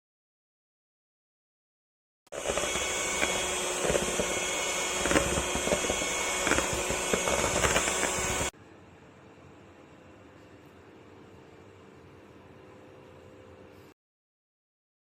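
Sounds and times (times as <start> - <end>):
stand mixer motor hum: 2.3 - 8.5.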